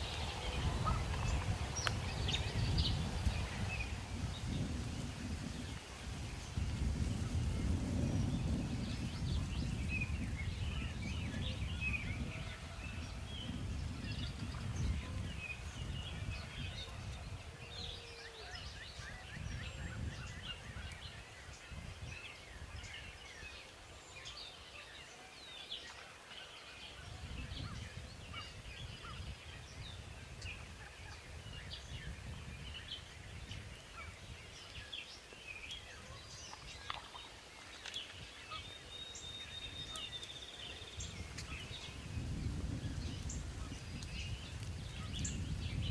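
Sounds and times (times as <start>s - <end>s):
songbirds chirping: 0.0s - 45.9s.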